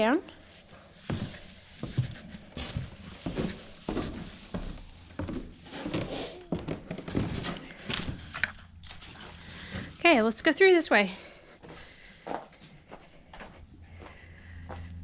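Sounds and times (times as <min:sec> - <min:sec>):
footsteps on stairs: 0:00.7 - 0:08.3, 0:11.6 - 0:14.9.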